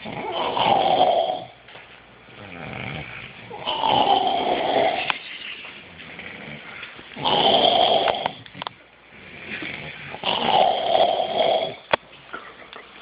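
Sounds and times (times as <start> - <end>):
loud snoring: 0.0 - 1.6, 2.4 - 5.2, 6.1 - 8.6, 9.2 - 11.9.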